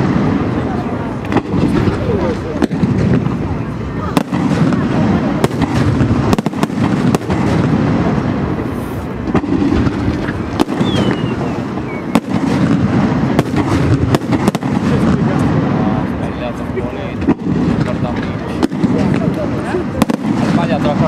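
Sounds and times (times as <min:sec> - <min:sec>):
sharp firework bangs: 0:00.0 - 0:21.0
rumble of firework shells: 0:04.1 - 0:16.2, 0:17.1 - 0:21.0
falling firework whistle: 0:10.6 - 0:12.6.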